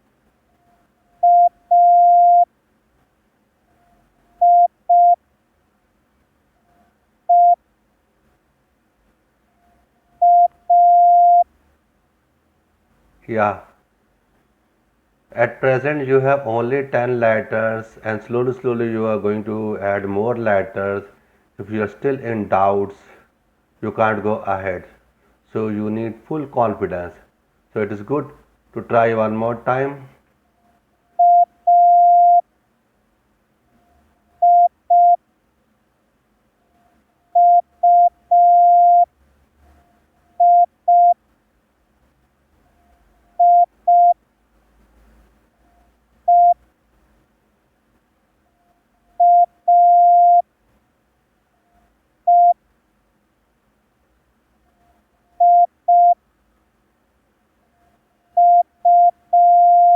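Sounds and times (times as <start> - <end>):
morse code beeps: 1.2 - 2.5, 4.4 - 5.2, 7.3 - 7.6, 10.2 - 11.4, 31.2 - 32.4, 34.4 - 35.2, 37.4 - 39.1, 40.4 - 41.2, 43.4 - 44.2, 46.3 - 46.6, 49.2 - 50.4, 52.3 - 52.6, 55.4 - 56.2, 58.4 - 59.9.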